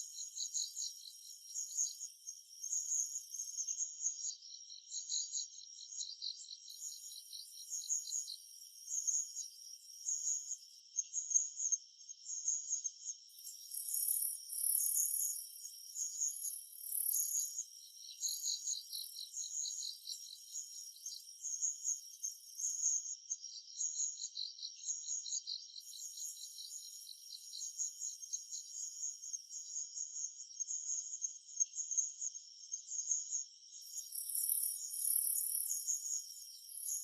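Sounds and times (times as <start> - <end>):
insects trilling: 0.0 - 10.8, 13.3 - 30.0, 33.0 - 37.0
high buzzing insect song: 33.7 - 37.0.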